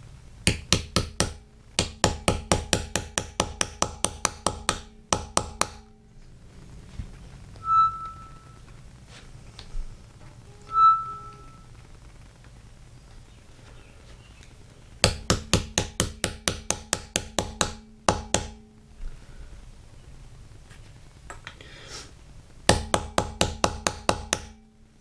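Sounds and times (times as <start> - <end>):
hammer tapping screwdriver handle: 0.5 - 5.9.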